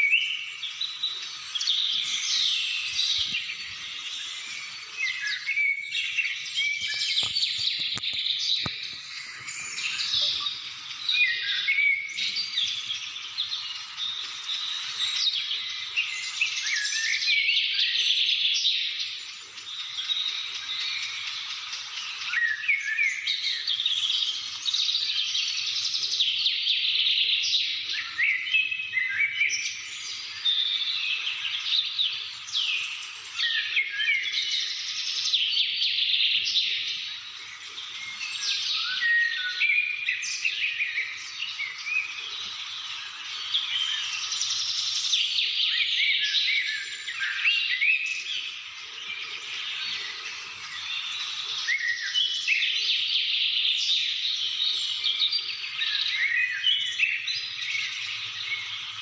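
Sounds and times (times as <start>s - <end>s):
small birds chirping chorus: 0.0s - 59.0s.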